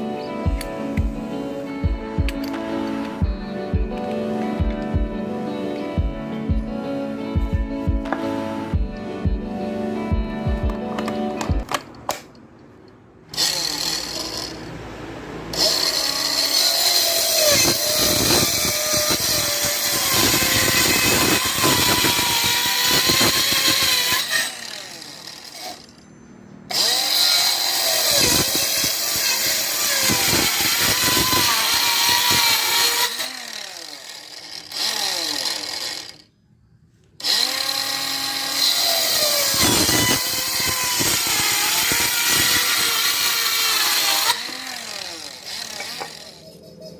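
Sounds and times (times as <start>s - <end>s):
circular saw cutting wood: 13.3s - 26.0s, 26.7s - 36.4s, 37.2s - 46.9s.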